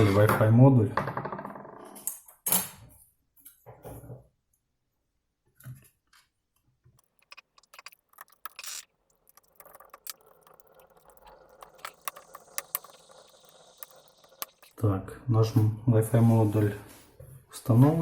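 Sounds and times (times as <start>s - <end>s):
small clicks taps and scrapes: 5.6s - 14.8s.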